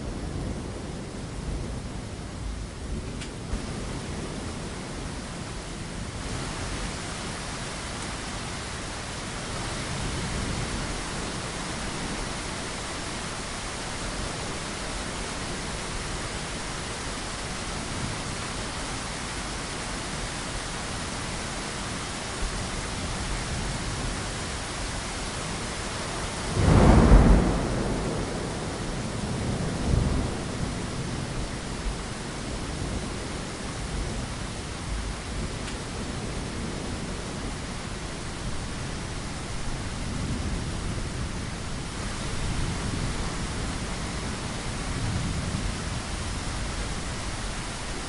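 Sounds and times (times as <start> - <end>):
steady rain: 0.0 - 48.0
thunderclap: 26.5 - 30.8.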